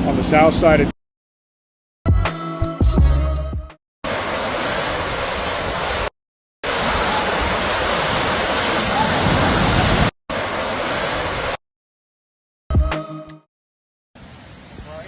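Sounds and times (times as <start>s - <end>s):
floodwater roaring: 4.0s - 11.6s.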